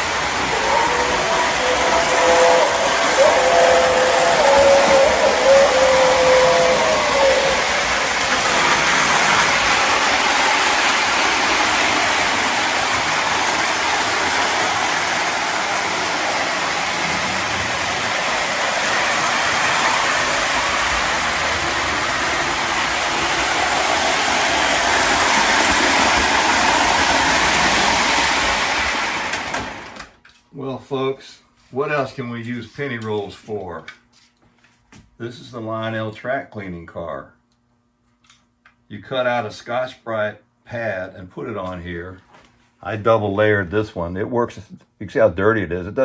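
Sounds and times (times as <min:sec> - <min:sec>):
toy train motor whirring rumble: 0:00.0 - 0:30.2.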